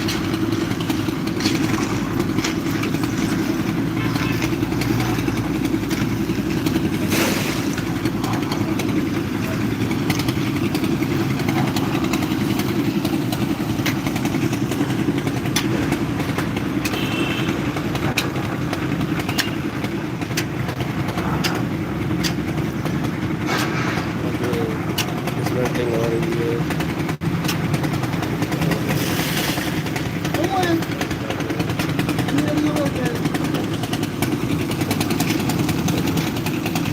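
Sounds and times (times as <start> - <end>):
construction machine engine running: 0.0 - 36.9
sharp clicks and knocks: 17.9 - 24.1, 24.8 - 27.8.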